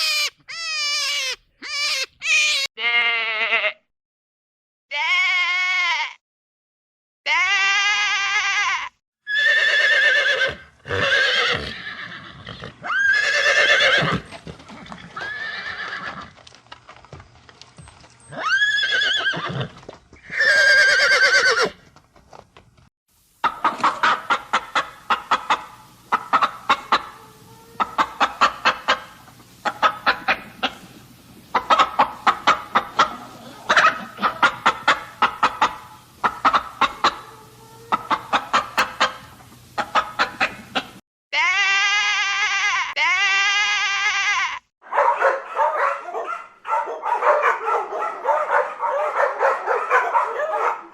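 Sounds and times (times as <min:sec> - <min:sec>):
chickens clucking: 0:23.4 - 0:41.0.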